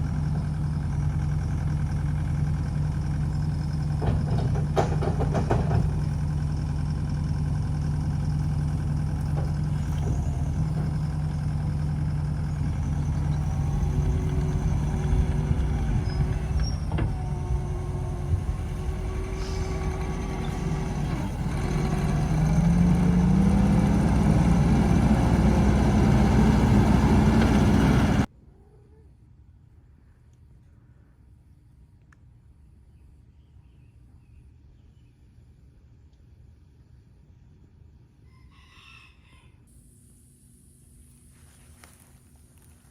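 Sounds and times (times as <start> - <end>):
engine running and revving: 0.0 - 28.3.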